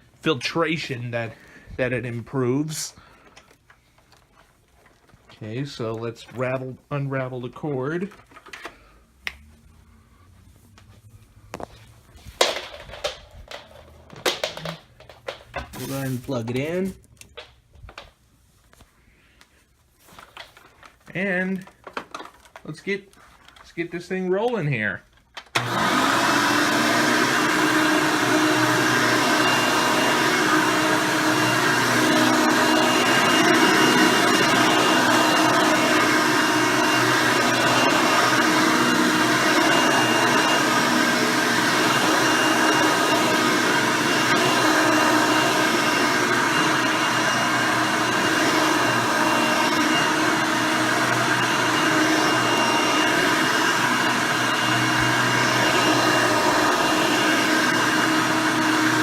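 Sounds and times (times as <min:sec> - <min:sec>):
vacuum cleaner running: 0:12.5 - 0:16.9, 0:25.6 - 0:59.0.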